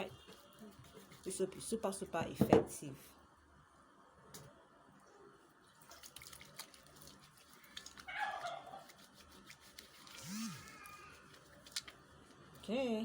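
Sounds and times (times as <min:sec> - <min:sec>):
hands lathering soap: 0:05.8 - 0:12.0.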